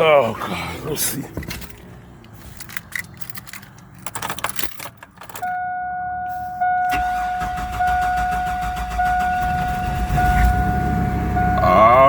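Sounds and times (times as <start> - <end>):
keys jingling in ignition: 1.2 - 5.7, 6.3 - 11.6
dashboard warning chime: 5.3 - 12.0
engine cranking on starter: 6.9 - 11.4.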